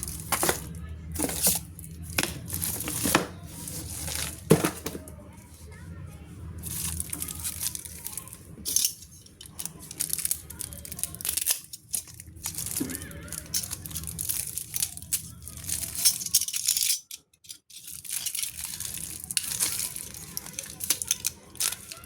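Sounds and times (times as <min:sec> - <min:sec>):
packaging torn and crinkled: 0:12.3 - 0:15.9.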